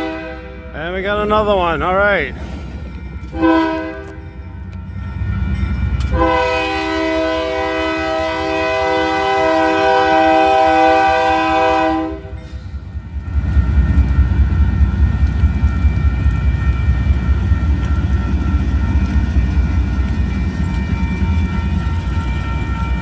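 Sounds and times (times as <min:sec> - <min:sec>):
locomotive air horn: 0:00.0 - 0:01.5, 0:03.2 - 0:04.3, 0:06.1 - 0:12.6
low train rumble: 0:00.0 - 0:23.0.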